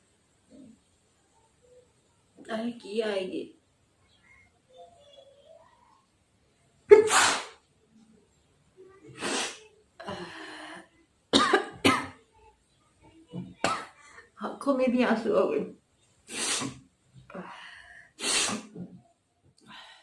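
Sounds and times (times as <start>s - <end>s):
woman sneezing: 6.9s - 7.6s, 9.2s - 9.6s, 16.3s - 16.8s, 18.2s - 18.7s
breathy bursts: 16.3s - 18.9s.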